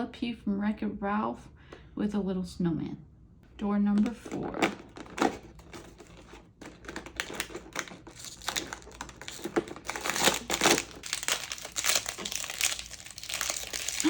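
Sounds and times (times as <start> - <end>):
cardboard packaging crinkling: 3.9 - 14.0.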